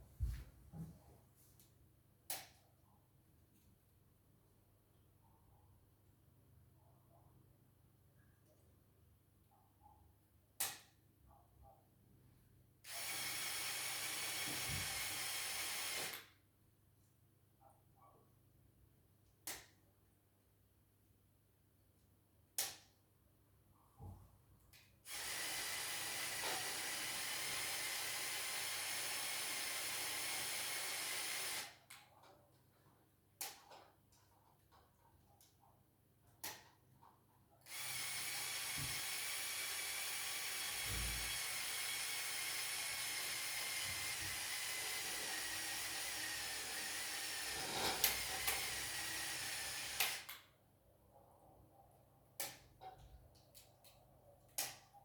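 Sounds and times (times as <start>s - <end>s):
small electric motor whining: 37.7s - 50.3s.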